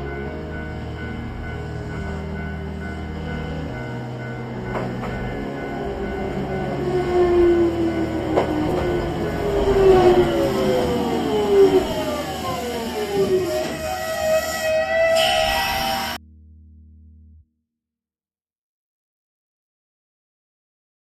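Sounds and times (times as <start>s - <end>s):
train running: 0.0s - 16.2s.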